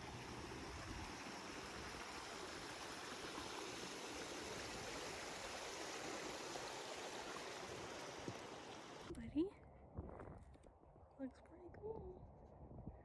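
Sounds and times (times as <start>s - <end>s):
creek water rushing: 0.0s - 9.1s.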